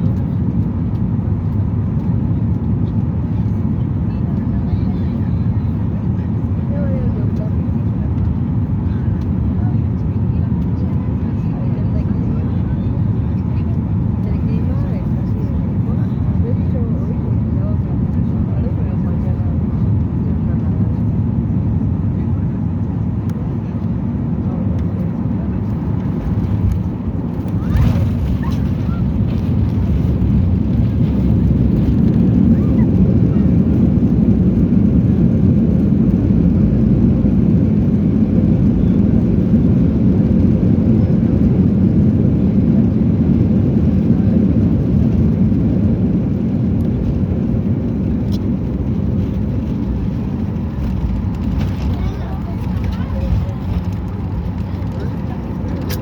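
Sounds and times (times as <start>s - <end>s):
airliner cabin engine rumble: 0.0s - 56.0s.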